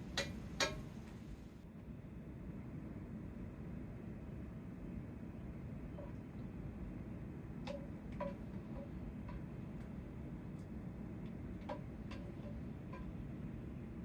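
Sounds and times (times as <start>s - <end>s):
low room hum: 0.0s - 14.0s.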